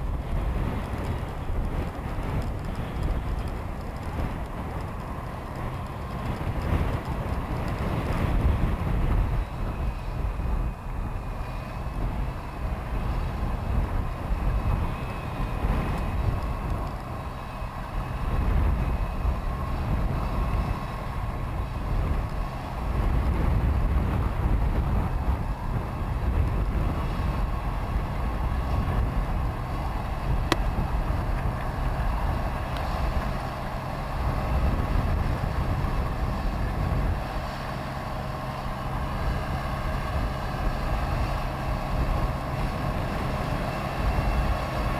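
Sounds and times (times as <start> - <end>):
tractor diesel engine under load: 0.0 - 44.9.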